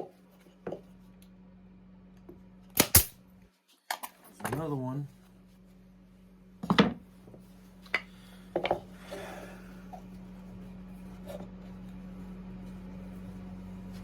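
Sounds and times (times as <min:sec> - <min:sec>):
sharp click: 0:02.8 - 0:03.2
steady low hum: 0:04.5 - 0:14.0
wooden pieces knocking on workbench: 0:06.6 - 0:07.0.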